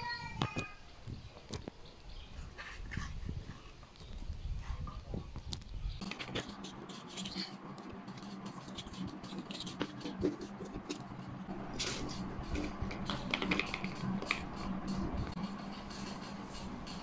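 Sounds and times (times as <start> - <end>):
cardboard scratching and scraping: 6.0 - 11.2.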